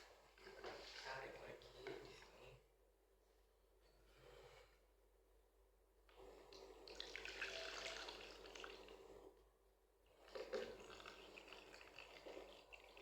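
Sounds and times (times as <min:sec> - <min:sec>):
small drips and clicks: 0:06.5 - 0:08.9, 0:10.2 - 0:13.0.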